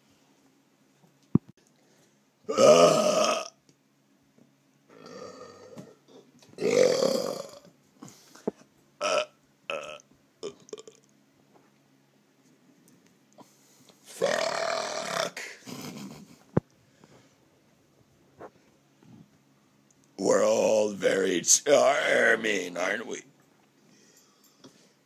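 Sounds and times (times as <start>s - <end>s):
man belching: 2.5s - 3.6s, 4.9s - 7.7s, 9.0s - 11.0s, 14.2s - 15.6s.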